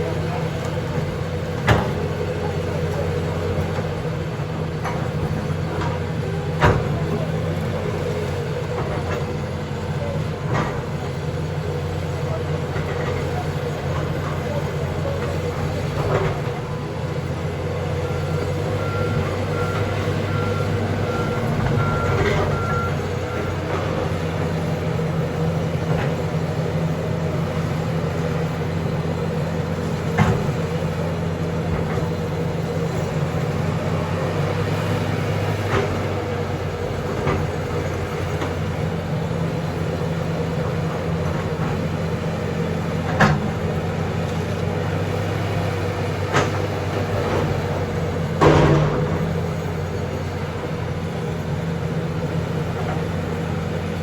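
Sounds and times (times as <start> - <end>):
diesel engine running: 0.0 - 54.0
reversing alarm beeping: 18.0 - 24.7.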